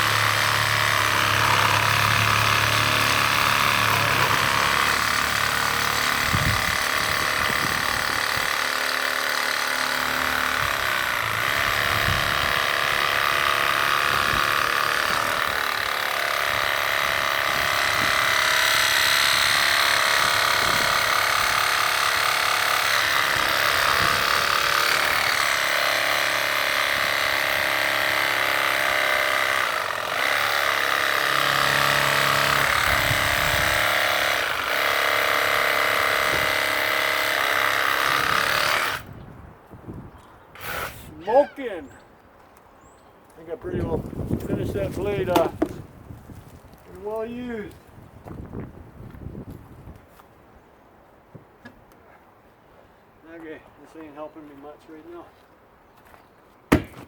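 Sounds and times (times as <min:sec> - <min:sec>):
reciprocating saw cutting metal: 0:00.0 - 0:39.1, 0:40.6 - 0:41.5.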